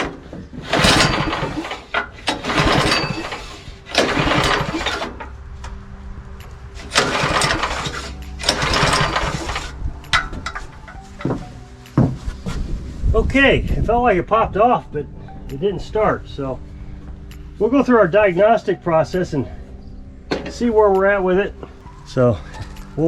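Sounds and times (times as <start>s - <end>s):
engine cranking on pull starter: 0.0s - 5.4s, 6.8s - 11.3s.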